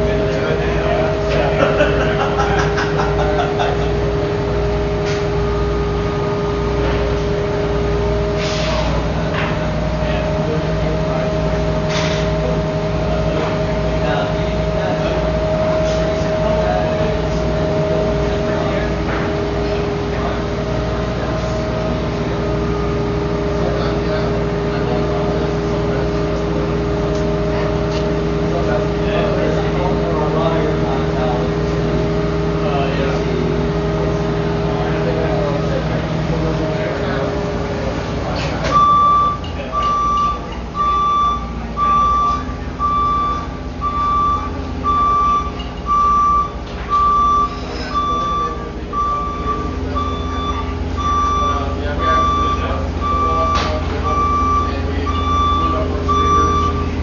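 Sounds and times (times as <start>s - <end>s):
machine engine humming: 0.0s - 57.0s
reversing alarm beeping: 38.6s - 57.0s.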